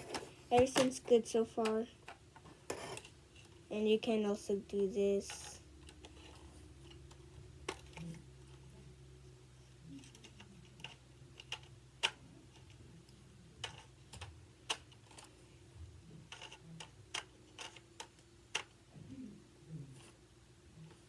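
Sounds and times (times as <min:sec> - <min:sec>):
faint steady hum: 0:00.0 - 0:21.0
toy rifle parts clicking: 0:16.3 - 0:18.8.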